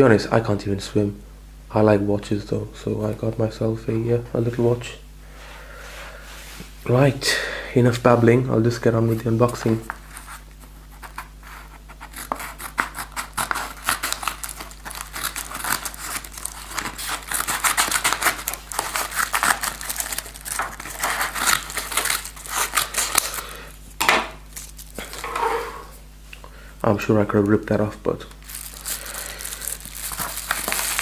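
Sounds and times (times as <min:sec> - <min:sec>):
packaging crinkling: 0:09.1 - 0:25.4, 0:28.1 - 0:31.0
scissors snipping packaging: 0:09.6 - 0:23.6, 0:24.5 - 0:25.2, 0:28.3 - 0:31.0.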